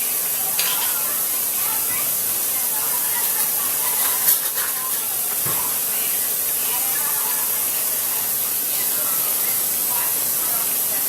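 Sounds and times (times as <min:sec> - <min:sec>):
food sizzling in a frying pan: 0:00.0 - 0:11.0.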